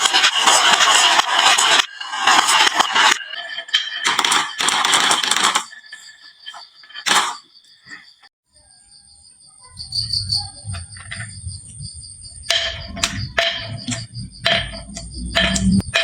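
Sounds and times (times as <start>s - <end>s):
marbles rolling on wood: 0.3s - 8.2s.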